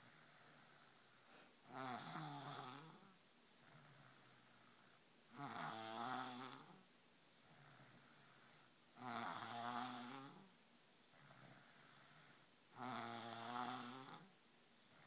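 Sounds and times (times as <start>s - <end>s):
quiet breathing: 0.0s - 15.0s
child snoring loudly: 1.7s - 3.0s, 5.3s - 6.8s, 9.0s - 10.5s, 12.8s - 14.3s.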